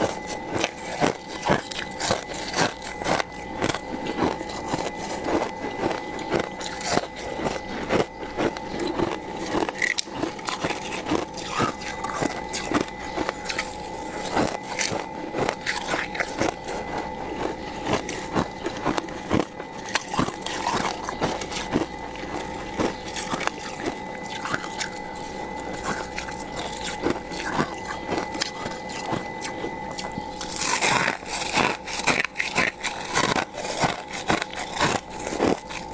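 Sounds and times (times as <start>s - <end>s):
steady hum: 0.0s - 35.9s
frost being scraped: 19.2s - 35.9s.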